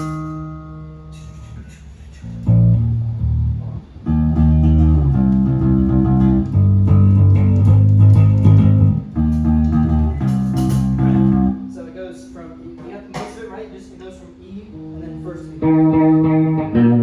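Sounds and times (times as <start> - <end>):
electric bass guitar: 0.0 - 11.7, 14.8 - 17.0.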